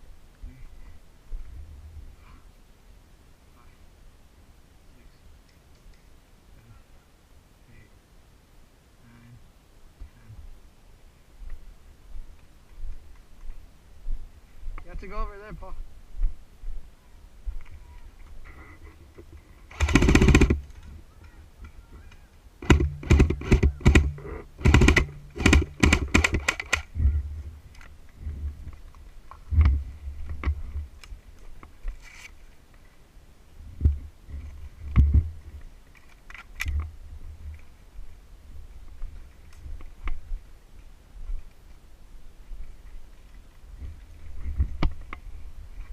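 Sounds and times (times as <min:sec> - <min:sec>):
airsoft guns firing bursts: 0:19.7 - 0:20.8, 0:22.6 - 0:26.9
low thumps: 0:22.6 - 0:27.6.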